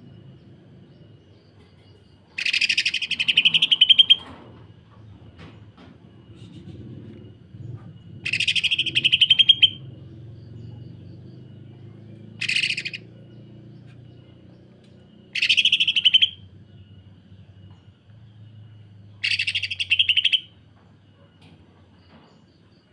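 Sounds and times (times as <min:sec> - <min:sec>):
bird singing rapid harsh notes: 0:00.0 - 0:04.3, 0:06.3 - 0:17.4, 0:19.1 - 0:20.6.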